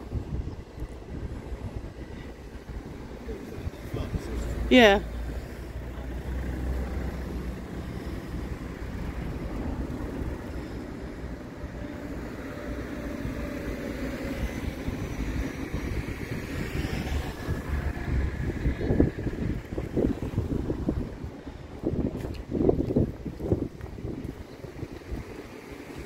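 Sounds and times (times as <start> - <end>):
wind buffeting microphone: 0.0 - 26.0
engine running: 2.3 - 21.8.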